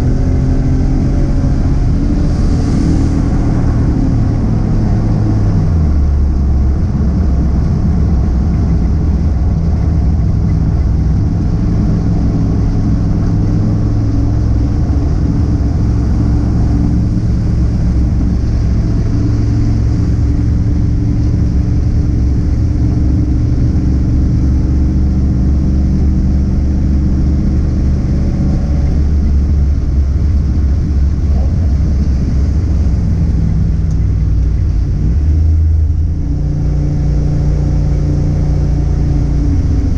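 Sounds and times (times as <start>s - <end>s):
car engine droning: 0.0s - 39.9s.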